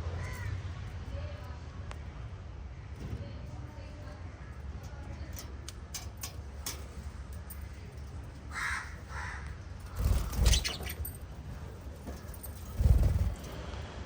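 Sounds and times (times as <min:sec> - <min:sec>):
lovebirds calling harshly: 0:08.5 - 0:11.0.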